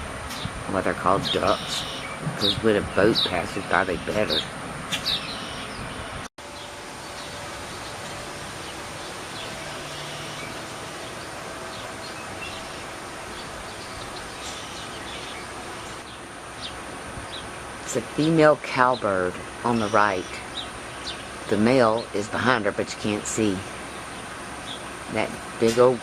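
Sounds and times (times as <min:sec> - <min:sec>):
outdoor background noise: 0:00.0 - 0:26.0
faint bird chirps: 0:01.4 - 0:02.6, 0:04.9 - 0:08.7.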